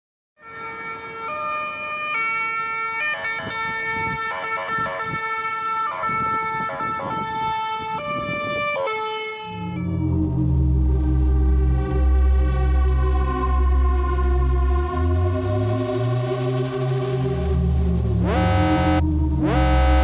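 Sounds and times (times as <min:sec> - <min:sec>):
siren-like electronic tone: 0:09.5 - 0:12.6, 0:17.4 - 0:20.0.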